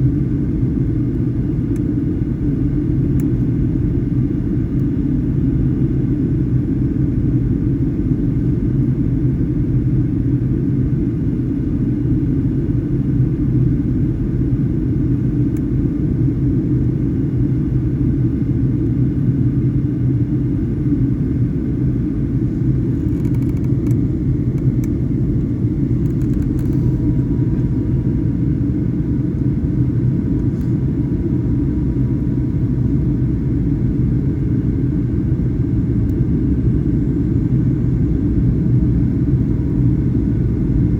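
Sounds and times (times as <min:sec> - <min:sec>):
airplane cabin engine rumble: 0:00.0 - 0:40.9.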